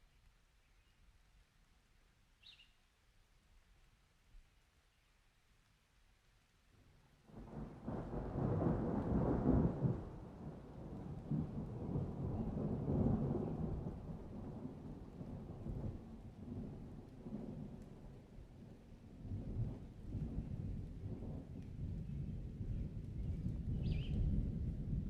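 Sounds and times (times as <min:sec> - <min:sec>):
rain: 0:00.0 - 0:25.0
low thunder rumble: 0:07.3 - 0:25.0.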